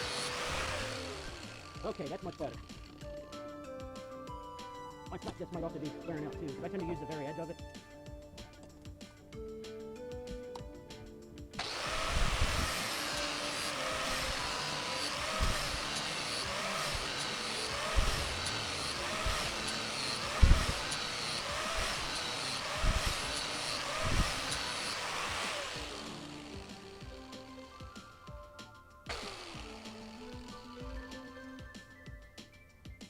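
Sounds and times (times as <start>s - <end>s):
angle grinder grinding steel: 0.0s - 3.6s, 11.6s - 28.2s, 29.1s - 31.5s.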